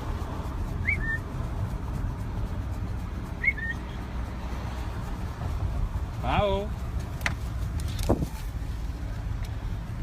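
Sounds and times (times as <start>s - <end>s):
steady low rumble: 0.0s - 10.0s
bird chirping: 3.4s - 4.0s.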